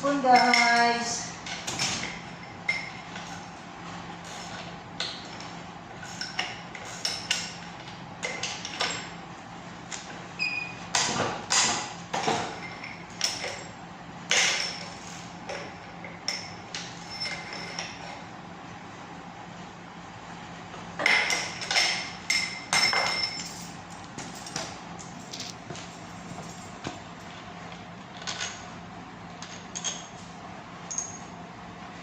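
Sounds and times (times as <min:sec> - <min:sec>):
metal tools clinking and knocking: 0:21.1 - 0:23.8.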